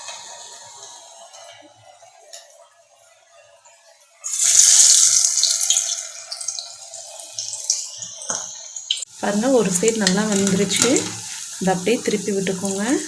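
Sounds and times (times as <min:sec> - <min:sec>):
food sizzling in hot oil: 0:00.0 - 0:01.6, 0:04.2 - 0:13.0.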